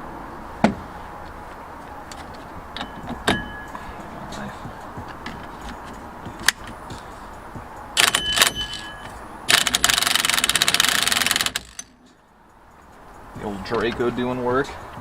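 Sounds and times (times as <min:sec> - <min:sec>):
impact wrench hammering: 0:02.8 - 0:03.7, 0:08.0 - 0:11.9.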